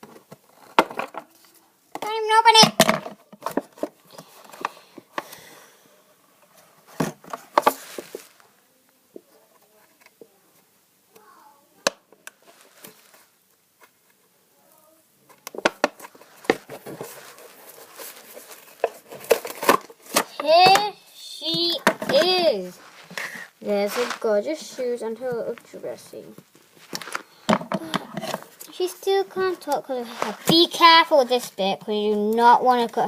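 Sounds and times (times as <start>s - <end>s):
packaging rustling and crinkling: 6.8s - 8.5s, 15.6s - 20.4s, 22.0s - 24.5s.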